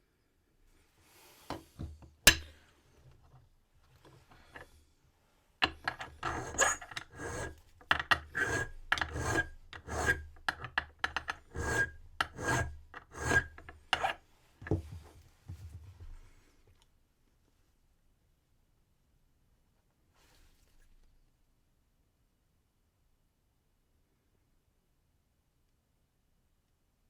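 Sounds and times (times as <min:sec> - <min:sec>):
file rasping on brass key: 0:05.6 - 0:14.2.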